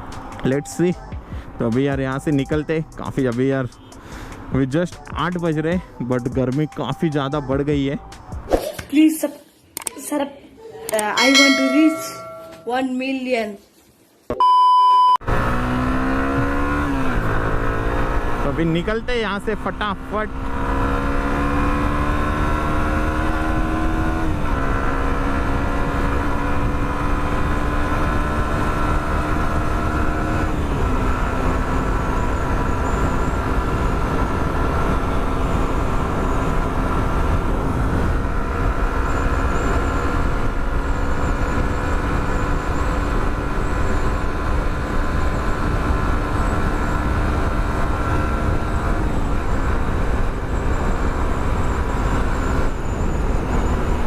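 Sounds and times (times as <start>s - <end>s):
motorcycle engine accelerating: 15.2s - 54.0s.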